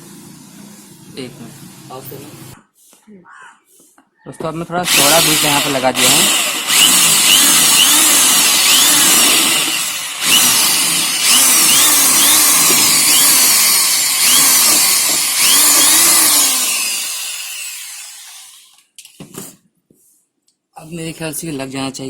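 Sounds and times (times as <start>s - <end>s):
electric drill drilling plastic: 4.8s - 18.9s.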